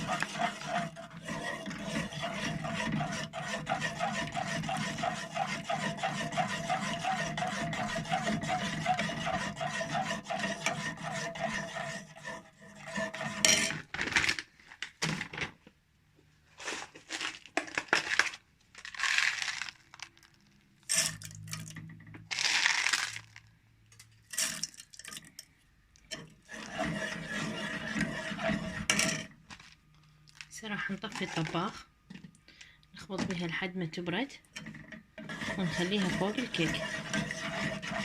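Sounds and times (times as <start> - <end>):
spoon scraping saucepan: 0.0 - 13.8, 26.1 - 29.3, 31.0 - 31.7, 34.6 - 38.0.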